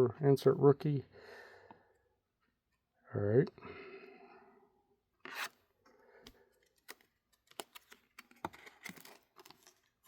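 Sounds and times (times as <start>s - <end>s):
packaging rustle: 6.6s - 10.0s.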